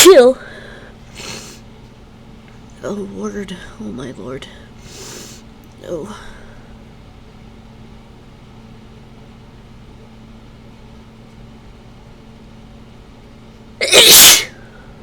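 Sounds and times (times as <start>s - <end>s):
steady low hum: 0.0s - 15.0s
person sneezing: 13.8s - 14.7s.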